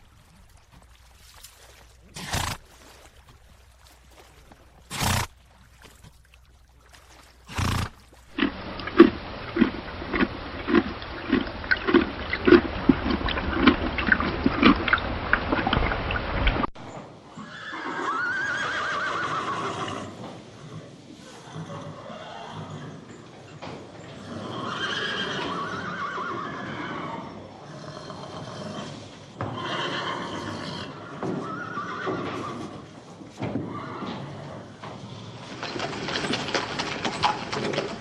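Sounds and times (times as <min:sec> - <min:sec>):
horse whinnying: 0:07.5 - 0:08.0, 0:17.3 - 0:20.2, 0:21.2 - 0:23.1, 0:24.1 - 0:32.8, 0:33.6 - 0:34.5.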